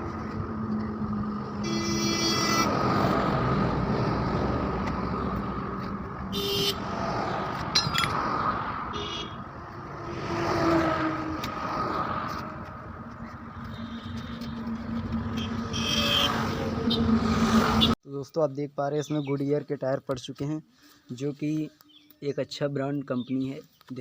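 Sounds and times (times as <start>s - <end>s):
motor traffic passing: 0.0s - 18.0s
short horn beeps: 13.6s - 14.6s, 15.3s - 16.4s.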